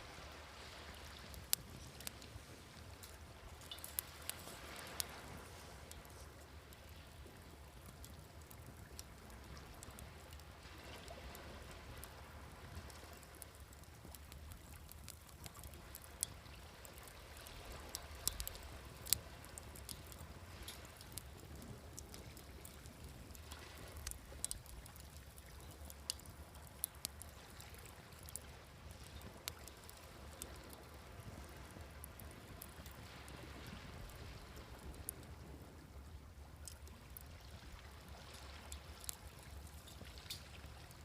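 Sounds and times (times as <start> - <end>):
sea waves: 0.0 - 13.9, 32.4 - 35.6
wood fire crackling: 0.0 - 41.0.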